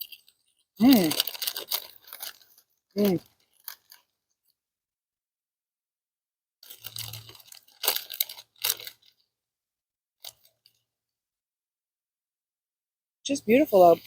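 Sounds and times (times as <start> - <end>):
person chewing crunchy food: 0.0 - 4.1, 6.6 - 9.2.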